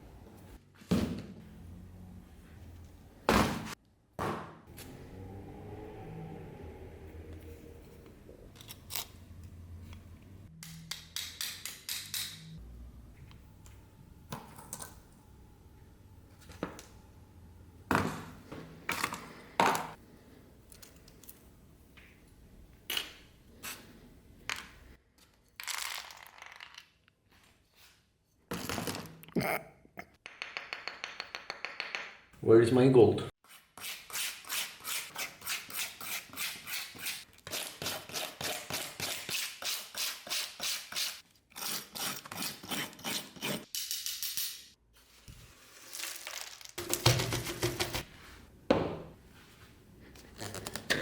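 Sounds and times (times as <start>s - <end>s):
metal tools clicking and scraping: 10.6s - 12.6s.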